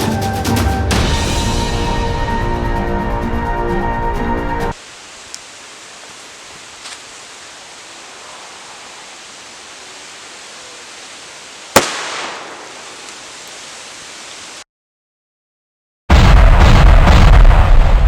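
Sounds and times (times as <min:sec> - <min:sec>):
outdoor background hiss: 0:04.7 - 0:14.6
grenade bang with ringing tail: 0:11.8 - 0:12.7.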